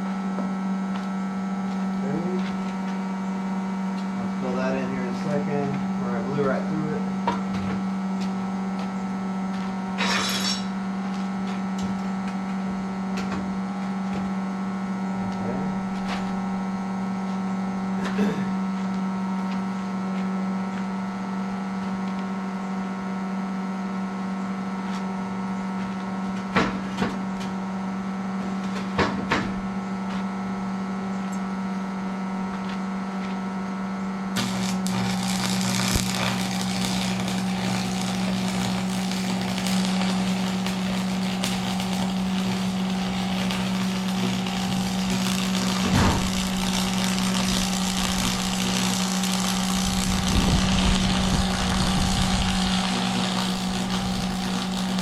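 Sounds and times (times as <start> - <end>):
electrical hum: 0.0 - 55.0
arc welder crackling hiss: 7.9 - 12.6, 34.4 - 55.0.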